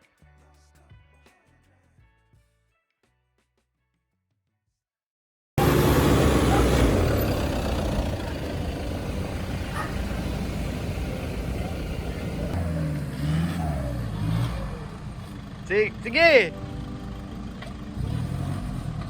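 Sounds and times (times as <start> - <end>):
heavy rushing noise: 5.6 - 12.6
vehicle engine revving: 5.6 - 19.0.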